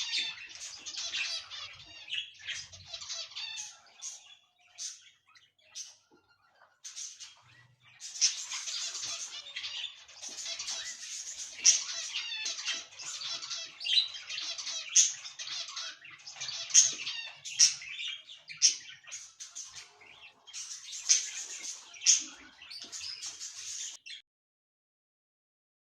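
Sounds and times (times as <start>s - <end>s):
sharp squawks: 0.0s - 4.2s
cockatiels chattering: 0.0s - 24.2s.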